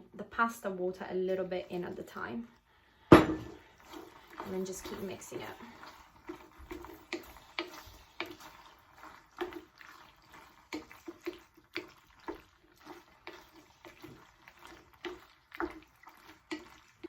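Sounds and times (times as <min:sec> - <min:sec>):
pasta squelching in sauce: 0:03.6 - 0:17.0.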